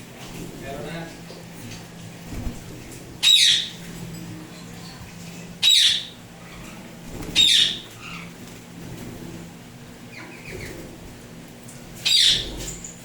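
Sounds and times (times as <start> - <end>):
parrot squawking: 3.2 - 3.8, 5.6 - 6.8, 7.4 - 8.3, 12.0 - 12.5.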